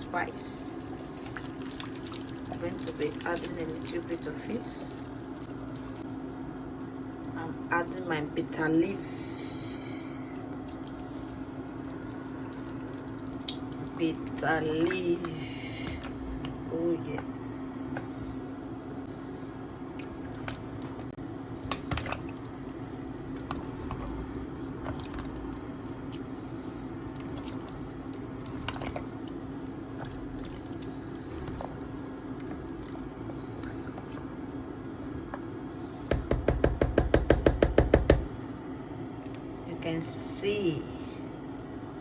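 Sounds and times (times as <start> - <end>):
steady hum: 0.0 - 42.0
soup squishing and bubbling: 0.4 - 36.3.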